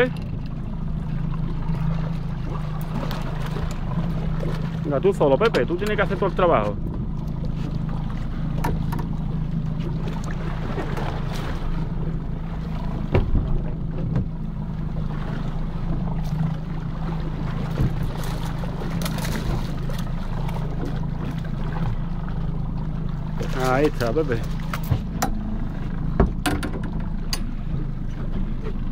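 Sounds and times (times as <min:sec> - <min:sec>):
boat engine humming: 0:00.0 - 0:28.9
sharp knocks: 0:26.2 - 0:27.5.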